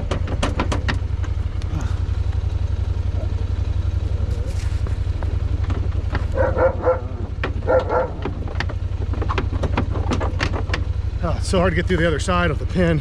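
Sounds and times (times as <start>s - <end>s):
truck engine idling: 0.0s - 13.0s
dog barking: 6.3s - 8.3s.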